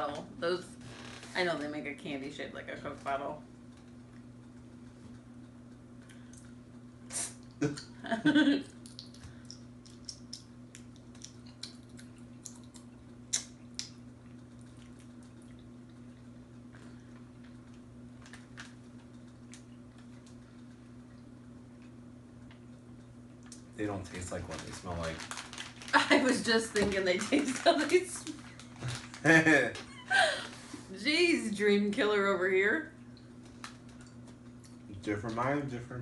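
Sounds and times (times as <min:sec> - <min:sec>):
steady low hum: 0:00.0 - 0:36.0
people chewing candy: 0:08.7 - 0:26.0, 0:26.7 - 0:29.4.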